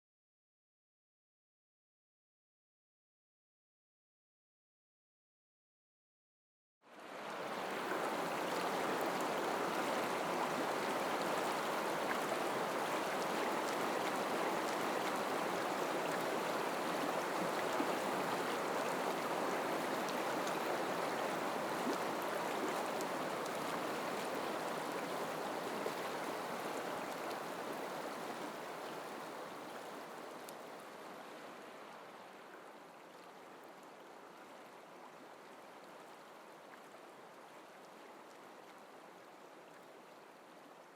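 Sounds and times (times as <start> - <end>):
river water rushing: 7.0 - 32.8.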